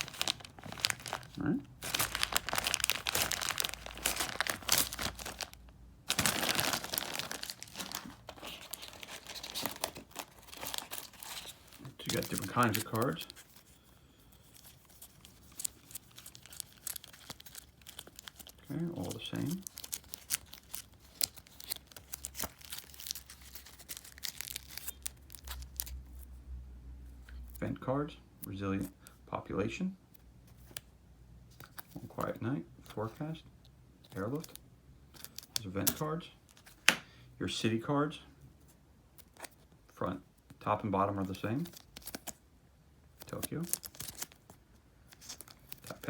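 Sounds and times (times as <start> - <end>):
plastic packaging crinkling: 0.0 - 13.8, 14.4 - 26.0, 43.2 - 46.0
cards rustling and clicking: 0.0 - 26.1, 30.5 - 30.9, 31.5 - 33.2, 34.0 - 37.1, 39.2 - 39.7, 41.2 - 42.4, 43.2 - 46.0.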